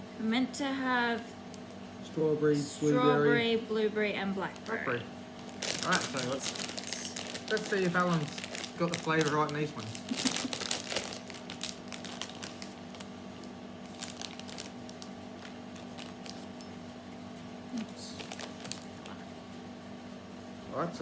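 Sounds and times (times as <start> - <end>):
steady low hum: 0.0 - 21.0
plastic packet crinkling: 4.4 - 16.7, 17.8 - 19.1.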